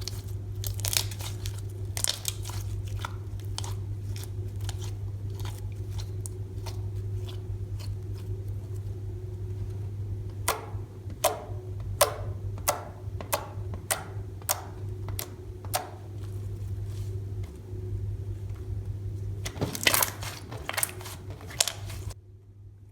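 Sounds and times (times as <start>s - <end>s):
slime clicking and popping: 0.0s - 7.9s, 10.4s - 17.6s, 19.4s - 22.2s
steady low hum: 0.0s - 22.9s.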